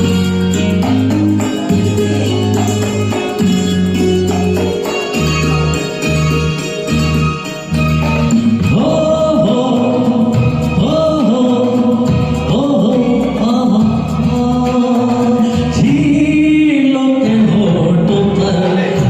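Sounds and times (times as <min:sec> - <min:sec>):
karaoke backing track: 0:00.0 - 0:19.0
man singing: 0:08.6 - 0:19.0.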